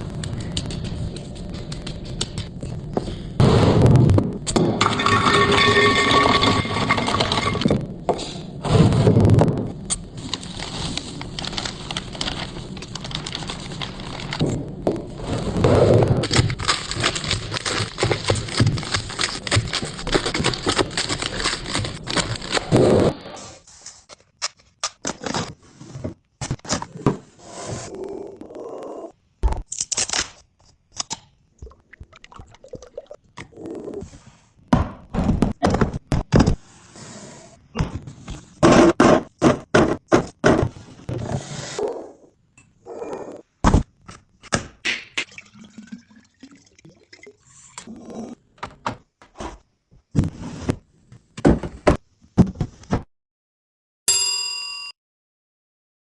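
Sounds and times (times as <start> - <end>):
kitchen items rustling and clattering: 4.8 - 9.4, 10.1 - 24.3.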